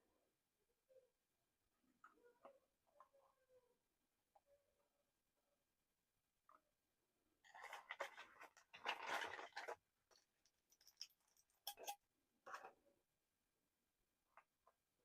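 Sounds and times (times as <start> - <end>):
rustling and scraping: 7.4 - 11.9.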